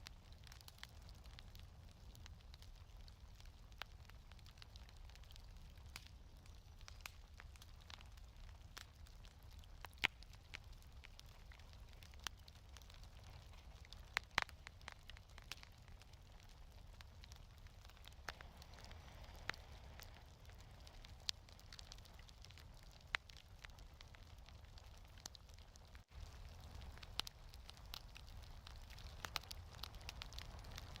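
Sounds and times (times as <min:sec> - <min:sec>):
sharp pops from fire: 0:00.0 - 0:31.0
wood fire crackling: 0:00.0 - 0:31.0.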